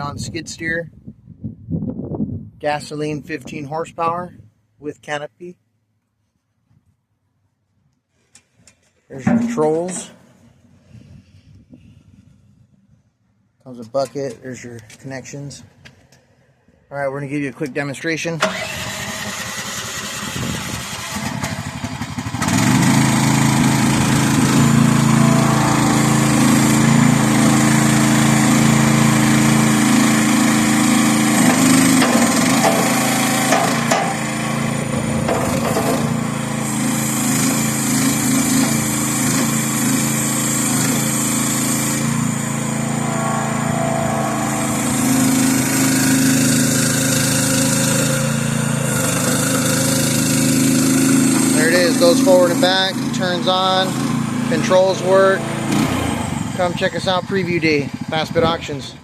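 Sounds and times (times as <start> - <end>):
skid steer loader engine running: 18.4 - 59.0.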